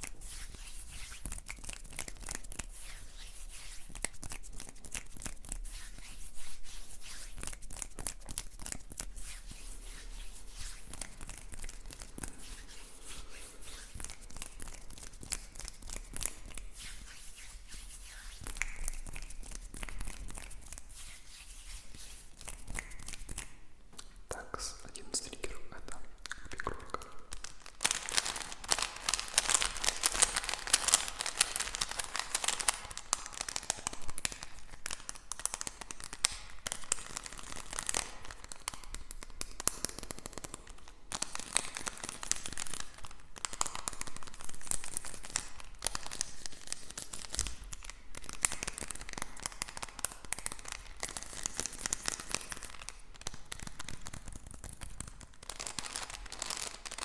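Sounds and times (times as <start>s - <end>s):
crinkly material crinkling: 24.3s - 57.0s.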